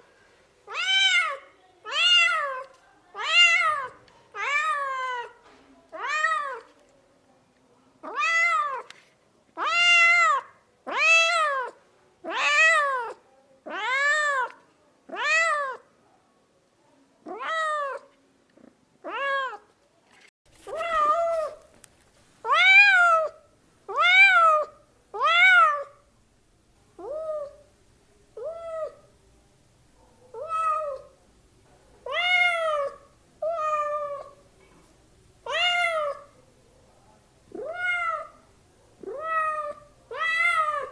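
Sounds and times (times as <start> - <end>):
faint low hum: 20.5 - 40.9
cat meowing: 22.4 - 25.9, 27.0 - 27.6, 28.4 - 29.1, 30.3 - 31.2, 32.0 - 34.4, 35.4 - 36.4, 37.5 - 38.4, 39.0 - 40.9.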